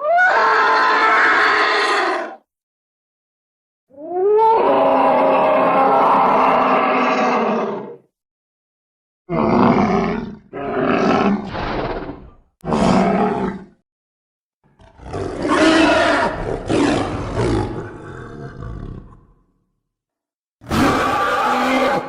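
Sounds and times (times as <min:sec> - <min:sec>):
dinosaur roars: 0:04.0 - 0:08.1, 0:09.3 - 0:13.8, 0:14.7 - 0:19.4, 0:20.6 - 0:22.0.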